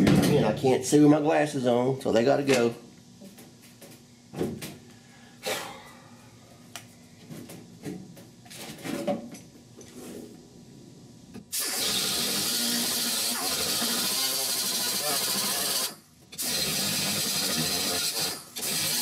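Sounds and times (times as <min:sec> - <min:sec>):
air grinder running: 0:11.6 - 0:19.0.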